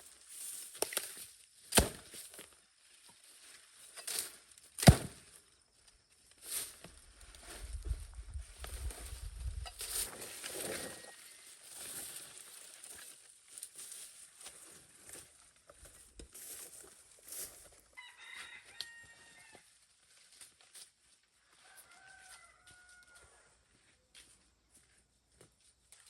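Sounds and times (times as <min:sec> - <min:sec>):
rooster crowing: 0:18.0 - 0:19.7, 0:21.6 - 0:23.6.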